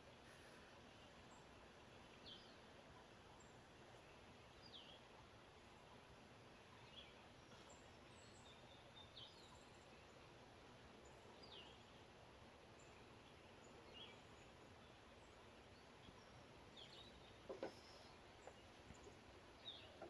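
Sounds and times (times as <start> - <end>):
quiet steady hiss: 0.0 - 20.0.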